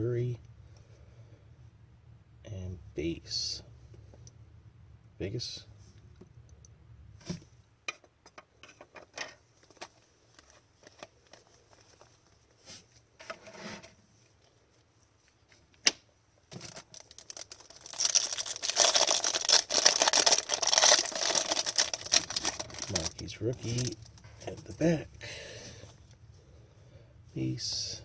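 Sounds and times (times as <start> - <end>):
foil pack tearing open: 16.5 - 24.1.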